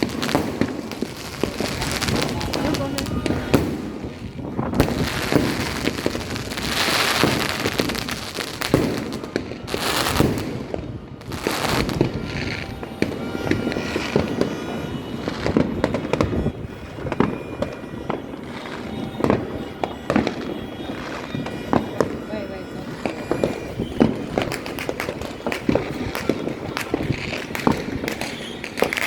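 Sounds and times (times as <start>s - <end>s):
crackling firework hiss: 0.0s - 17.2s, 22.9s - 29.0s
fireworks bangs and pops: 0.0s - 29.0s.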